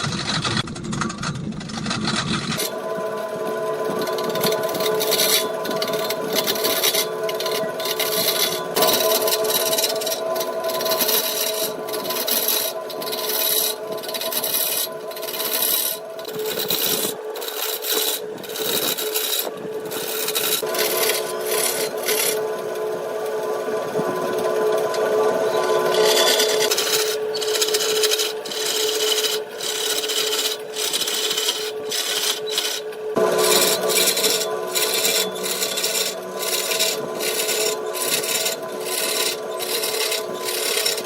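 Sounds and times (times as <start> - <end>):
lathe motor humming: 0.0 - 41.0
turning tool scraping wood: 0.0 - 41.0.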